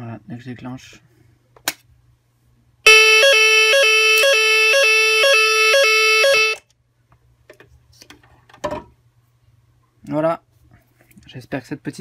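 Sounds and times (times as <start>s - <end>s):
two-tone fire alarm sounder: 2.9s - 6.6s.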